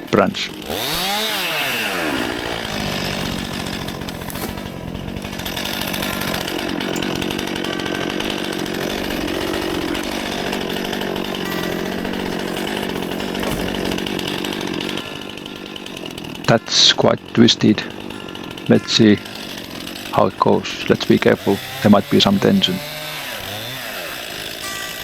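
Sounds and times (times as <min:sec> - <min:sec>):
chainsaw cutting wood: 0:00.0 - 0:25.0.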